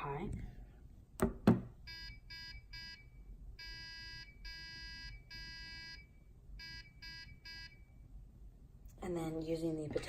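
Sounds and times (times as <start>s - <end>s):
electronic buzzer beeping: 1.9s - 7.8s.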